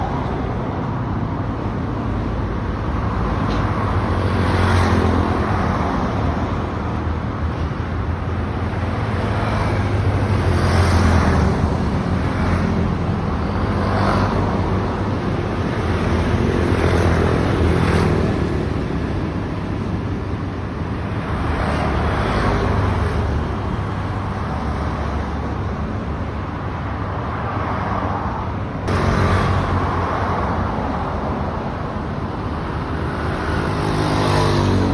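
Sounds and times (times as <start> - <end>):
vehicles passing: 0.0 - 34.9
sudden loud noise: 28.9 - 30.5.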